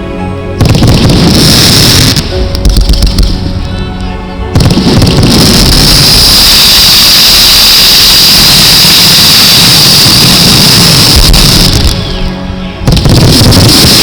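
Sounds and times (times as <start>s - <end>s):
fireworks hissing roar: 0.6s - 3.7s, 4.6s - 12.2s, 12.9s - 14.0s
high whistle: 5.7s - 12.3s.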